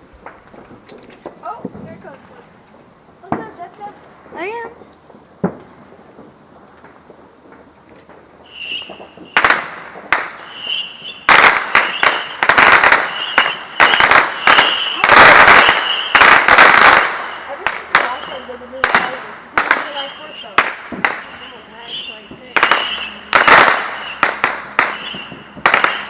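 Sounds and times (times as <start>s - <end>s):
firework bangs: 0.0s - 26.0s
firework crackling: 0.0s - 26.0s
firework whistle: 8.4s - 26.0s.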